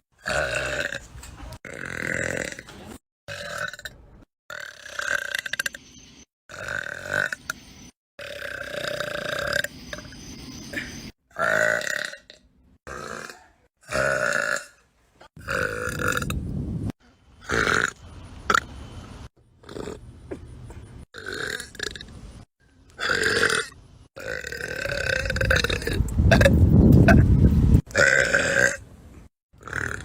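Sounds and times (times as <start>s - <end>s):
woman burping: 23.0s - 27.3s.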